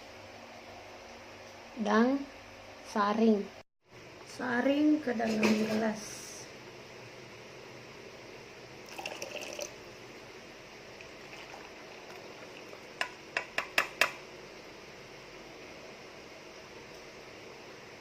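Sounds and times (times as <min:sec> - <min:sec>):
drink being strained into glass: 0:08.8 - 0:09.8, 0:11.0 - 0:12.9.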